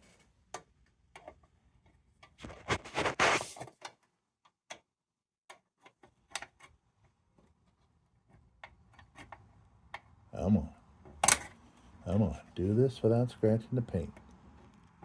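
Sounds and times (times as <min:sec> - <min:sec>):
scraping rustle: 0:02.4 - 0:03.8.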